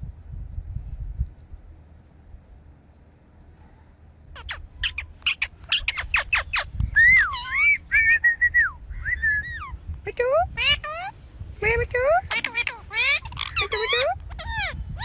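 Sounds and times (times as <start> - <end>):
parakeet sharp chirps: 4.4 - 8.2, 12.2 - 15.0
parakeet whistled calls: 4.4 - 9.8, 12.2 - 15.0.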